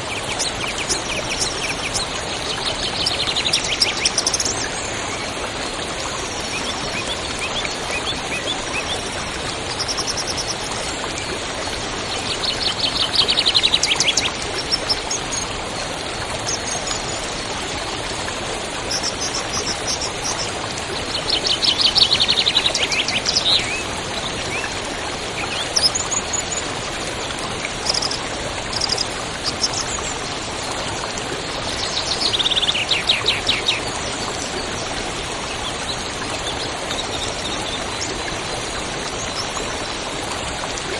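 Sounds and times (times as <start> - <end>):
stream rushing: 0.0 - 40.9
songbirds singing: 11.7 - 15.6, 18.8 - 26.7, 27.6 - 30.2, 31.6 - 38.5.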